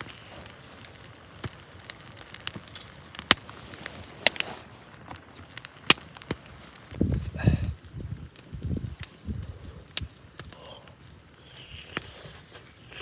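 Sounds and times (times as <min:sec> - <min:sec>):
sharp pops: 0:00.0 - 0:07.0, 0:11.3 - 0:13.0
campfire crackling: 0:00.0 - 0:13.0
faint hiss: 0:00.0 - 0:13.0.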